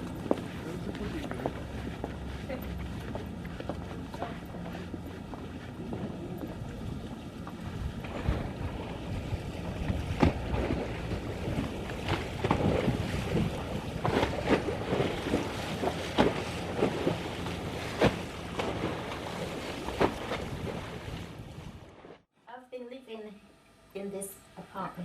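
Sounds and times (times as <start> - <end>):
wind buffeting microphone: 0.0 - 22.0
steady low rumble: 0.0 - 22.3.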